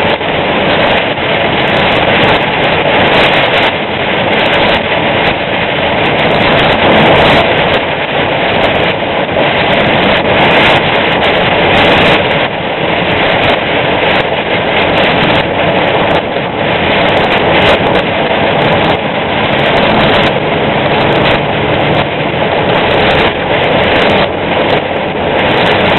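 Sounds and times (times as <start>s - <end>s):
heavy rain: 0.0s - 25.9s
truck engine: 0.0s - 25.9s
tyres on wet road: 0.0s - 25.9s.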